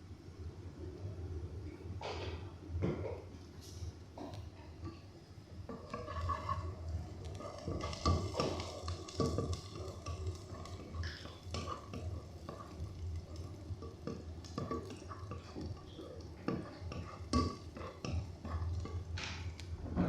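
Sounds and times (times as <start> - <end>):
steady low hum: 0.0 - 20.0
utensils and cookware clinking: 7.3 - 19.6.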